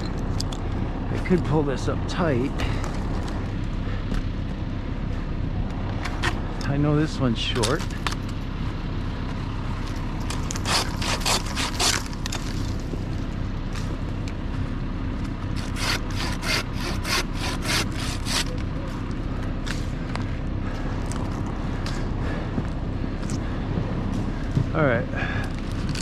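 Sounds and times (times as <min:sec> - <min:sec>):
low engine hum: 0:00.0 - 0:26.0
hand saw cutting wood: 0:10.3 - 0:12.5, 0:15.6 - 0:18.6.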